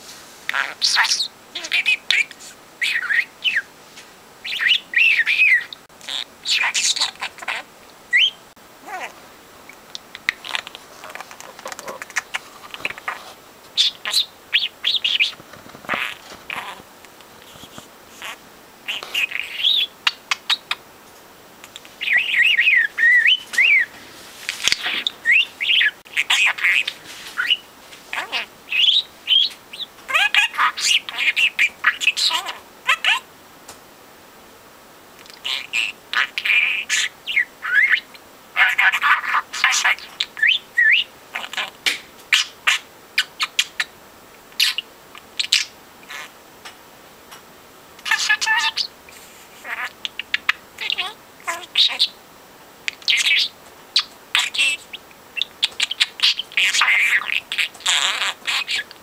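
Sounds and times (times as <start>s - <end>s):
budgerigar chattering: 0.5s - 3.6s, 4.4s - 9.1s, 10.2s - 13.2s, 13.8s - 16.8s, 17.6s - 20.8s, 24.5s - 33.2s, 35.3s - 43.9s, 48.0s - 48.9s, 49.6s - 52.2s, 52.9s - 59.0s
budgerigar chirps: 0.5s - 3.7s, 4.4s - 9.1s, 13.8s - 15.3s, 28.2s - 33.2s, 48.0s - 48.9s, 49.6s - 52.2s, 52.9s - 59.0s
budgerigar whistling notes: 4.4s - 5.8s, 22.0s - 23.9s.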